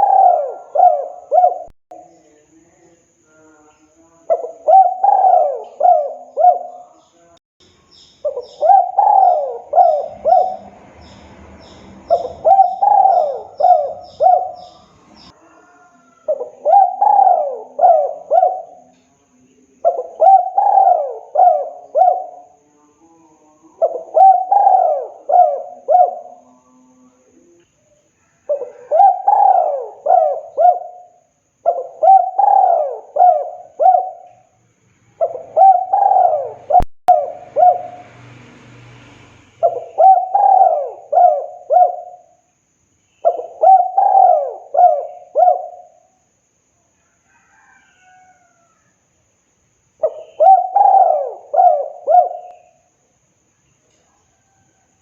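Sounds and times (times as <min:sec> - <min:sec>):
dove cooing: 0:00.0 - 0:02.1, 0:04.3 - 0:07.1, 0:08.2 - 0:19.0, 0:19.8 - 0:27.6, 0:28.2 - 0:34.6, 0:35.2 - 0:38.1, 0:39.6 - 0:42.4, 0:43.2 - 0:46.2, 0:50.0 - 0:52.9.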